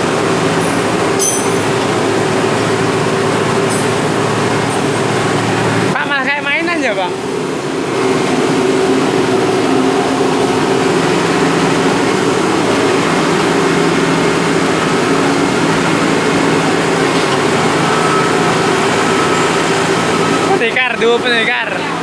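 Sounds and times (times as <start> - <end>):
loader engine running: 0.0 - 22.0.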